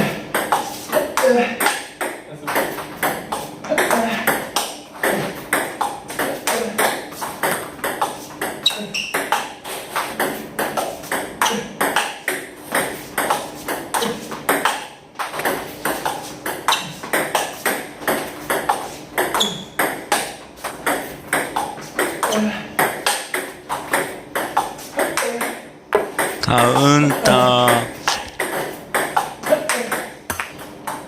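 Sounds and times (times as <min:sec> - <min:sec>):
table tennis balls bouncing: 0:00.3 - 0:00.7.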